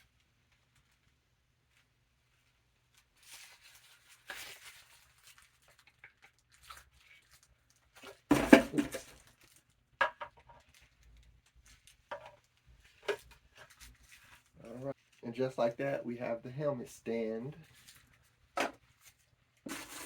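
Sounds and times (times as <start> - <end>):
plastic rustling and scraping: 0.5 - 16.0, 17.5 - 20.0
plastic parts clattering: 7.9 - 14.4.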